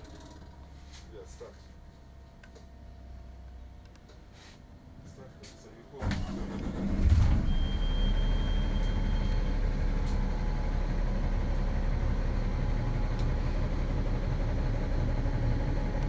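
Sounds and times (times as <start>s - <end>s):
diesel engine idling: 6.0s - 16.0s.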